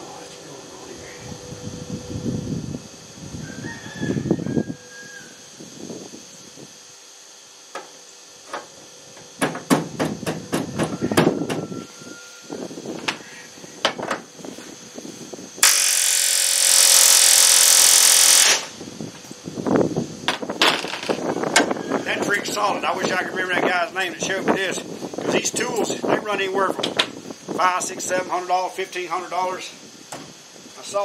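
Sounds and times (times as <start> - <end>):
pneumatic rivet gun hammering: 7.7 - 11.3, 15.6 - 18.8.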